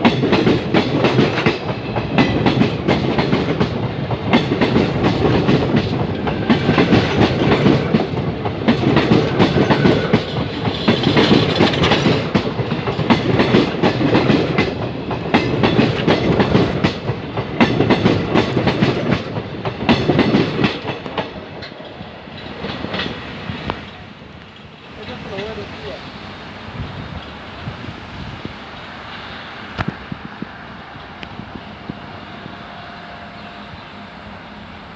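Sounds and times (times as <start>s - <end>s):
train wheels clattering over rail joints: 0.0s - 26.0s.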